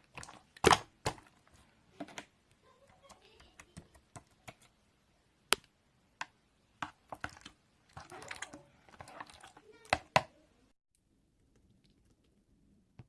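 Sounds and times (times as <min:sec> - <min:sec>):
sharp clicks and soft taps: 0:05.5 - 0:07.6.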